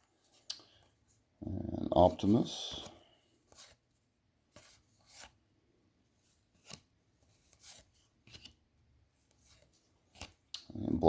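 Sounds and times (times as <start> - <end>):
trading cards rustling: 2.1 - 3.9, 6.2 - 11.0.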